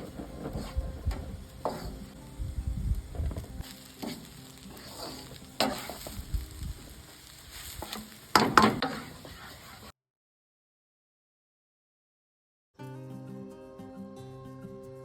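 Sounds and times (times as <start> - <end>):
utensil scraping and knocking pan: 0.0 - 2.2, 4.0 - 6.3, 7.7 - 9.9
food sizzling in a pan: 0.0 - 9.9.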